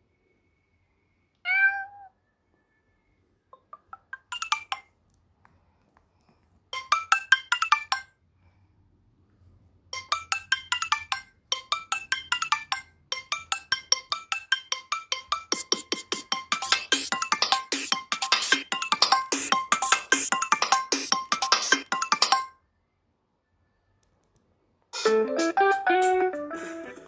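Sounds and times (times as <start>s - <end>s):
ringtone of rapid high notes: 10.0s - 22.6s.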